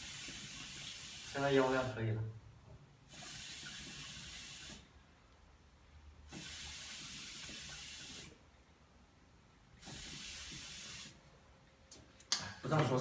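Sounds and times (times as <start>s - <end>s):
hookah air hissing: 0.0s - 1.8s, 3.1s - 4.9s, 6.3s - 8.4s, 9.8s - 11.2s.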